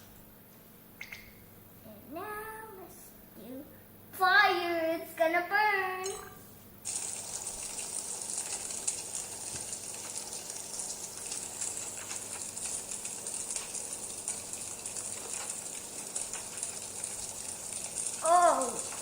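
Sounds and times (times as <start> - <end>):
crackling fire sound effect: 6.8 - 19.0.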